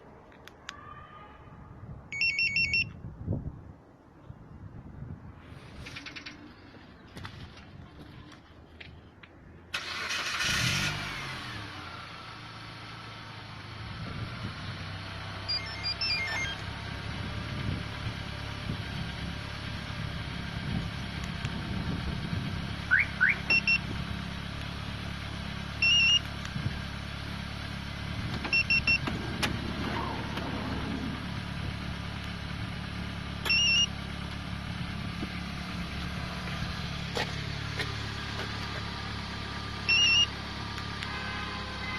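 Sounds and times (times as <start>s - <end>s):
car engine cranking and idling: 5.5s - 41.2s
electronic double beeps: 15.5s - 16.6s, 33.5s - 33.9s, 39.9s - 40.3s.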